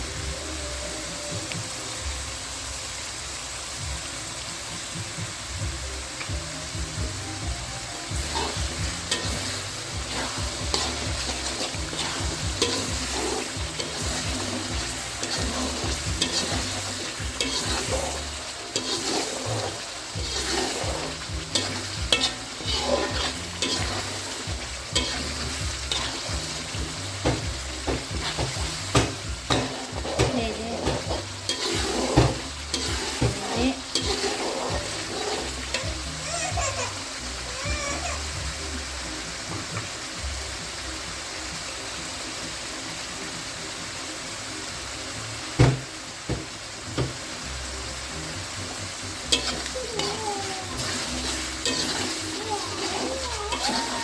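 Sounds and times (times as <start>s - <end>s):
chicken sizzling in a pan: 0.0s - 54.0s
utensil scraping against pan: 8.2s - 36.2s, 49.3s - 54.0s.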